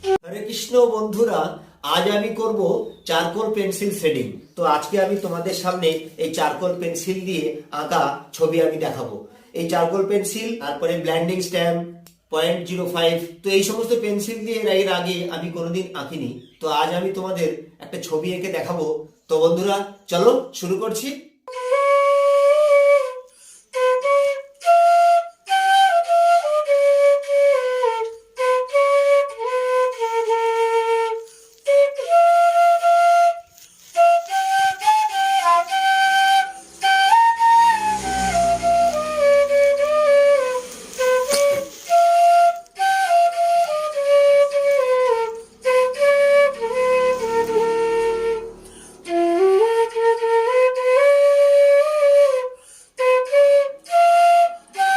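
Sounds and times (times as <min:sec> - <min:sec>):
slow solo melody: 0:23.8 - 0:52.4.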